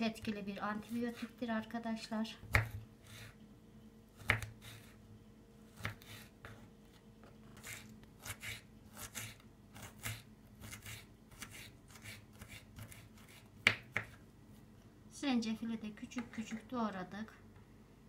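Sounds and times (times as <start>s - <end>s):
knife chopping on cutting board: 2.5s - 3.4s, 4.2s - 5.0s, 5.8s - 6.6s, 7.6s - 14.2s.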